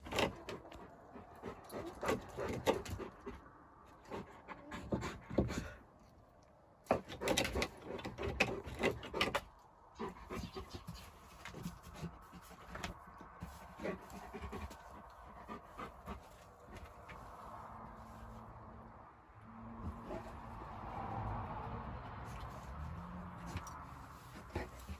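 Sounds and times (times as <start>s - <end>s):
large dog panting: 0.1s - 5.9s, 10.0s - 17.1s.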